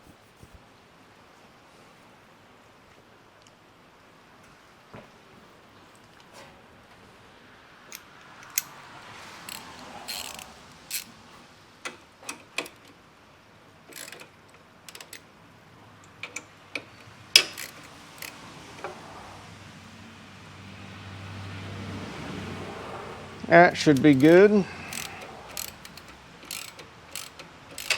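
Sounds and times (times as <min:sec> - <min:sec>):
hand tools clicking on metal: 0:07.9 - 0:11.1, 0:11.8 - 0:13.0, 0:13.9 - 0:15.2, 0:16.0 - 0:19.0, 0:23.7 - 0:27.9.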